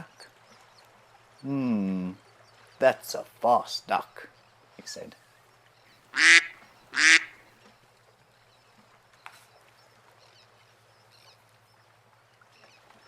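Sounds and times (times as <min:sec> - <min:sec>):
duck quacking: 0:06.2 - 0:07.4.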